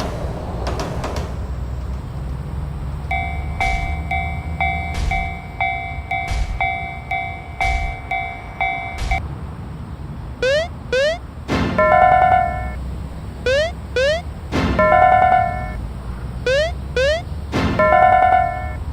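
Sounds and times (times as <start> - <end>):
train rumbling past: 0.0 - 18.9
level-crossing alarm bell: 3.1 - 9.2, 10.4 - 11.2, 11.8 - 12.8, 13.5 - 15.9, 16.5 - 18.9
train wheel clacks: 3.1 - 9.2.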